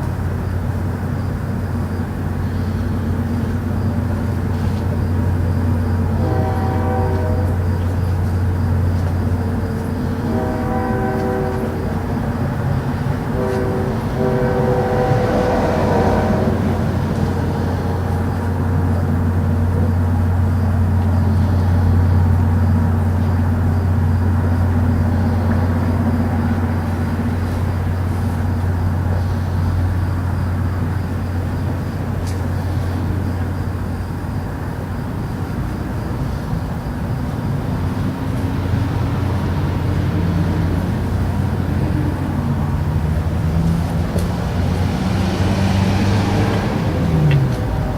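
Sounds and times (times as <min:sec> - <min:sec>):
brassy trumpet-like tones: 0:06.2 - 0:07.6, 0:13.4 - 0:16.6.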